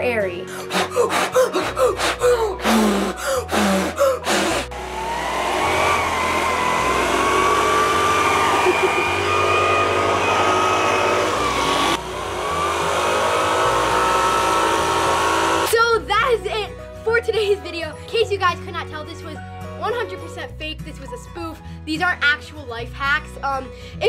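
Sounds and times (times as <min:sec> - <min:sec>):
hair dryer running: 0:00.7 - 0:15.7.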